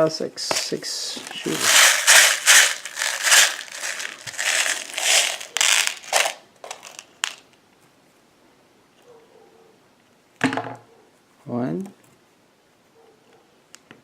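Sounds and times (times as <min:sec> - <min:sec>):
pellet packaging rustling: 0:00.5 - 0:07.5.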